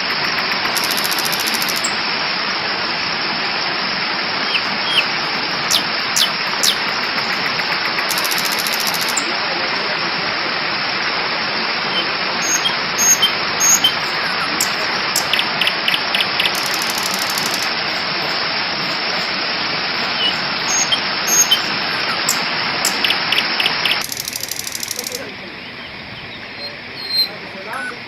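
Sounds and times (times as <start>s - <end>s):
waterfall rushing into pond: 0.0s - 28.0s
faint high chirps: 0.6s - 2.0s, 8.1s - 9.3s, 11.9s - 19.3s, 20.1s - 28.0s.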